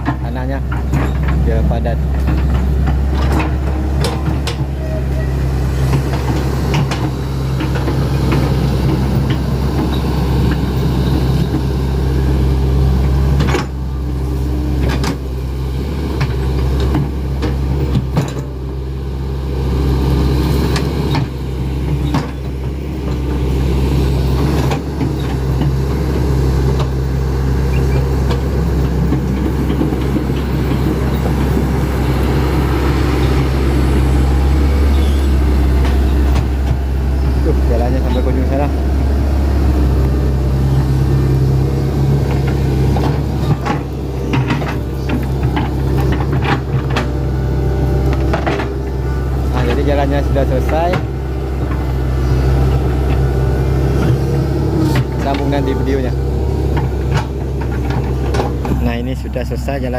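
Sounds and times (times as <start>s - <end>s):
machine knocks and clunks: 0.0s - 4.9s, 28.2s - 38.8s, 41.9s - 47.3s
excavator diesel engine running: 0.0s - 59.9s.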